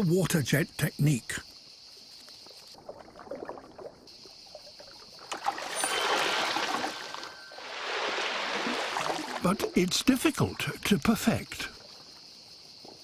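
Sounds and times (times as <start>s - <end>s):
water splashing: 2.7s - 12.1s.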